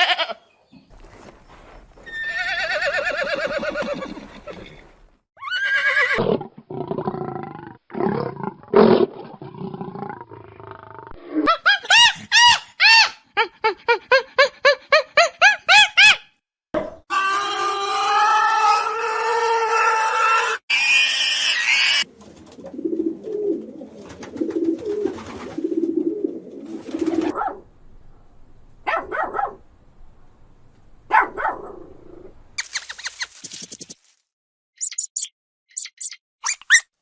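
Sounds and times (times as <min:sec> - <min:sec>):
dog-like yelps and barks: 0:14.1 - 0:16.3, 0:27.3 - 0:27.6, 0:28.9 - 0:29.6, 0:31.1 - 0:31.8, 0:36.0 - 0:36.9
quick high chirps: 0:34.8 - 0:36.9.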